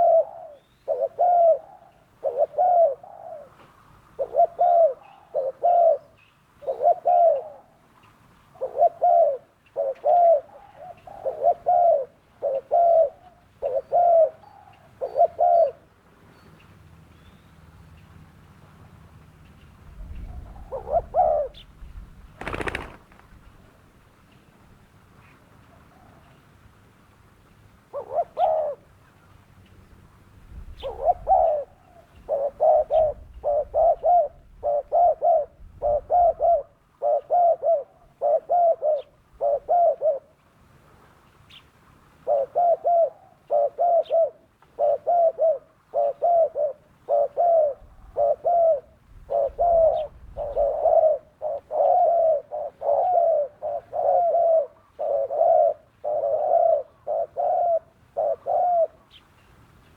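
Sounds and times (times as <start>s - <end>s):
dove cooing: 0.0s - 7.9s, 8.5s - 15.9s, 20.1s - 23.8s, 27.9s - 29.0s, 30.8s - 40.4s, 42.2s - 59.2s.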